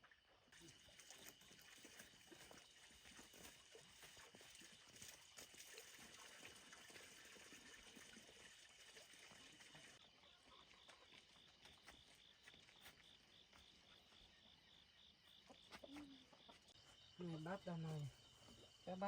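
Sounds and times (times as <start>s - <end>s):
insects trilling: 9.9s - 19.0s.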